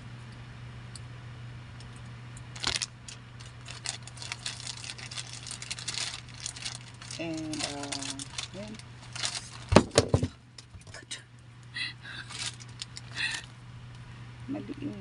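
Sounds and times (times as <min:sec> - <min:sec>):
low electrical hum: 0:00.0 - 0:15.0
cable clattering and rustling: 0:02.6 - 0:11.0, 0:12.3 - 0:13.5.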